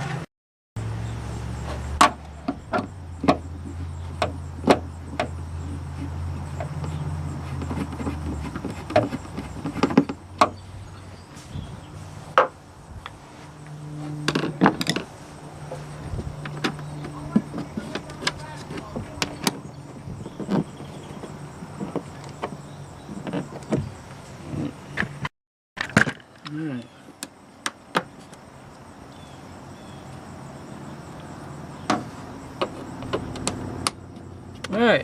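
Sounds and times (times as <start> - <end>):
steady low hum: 0.8 - 24.8.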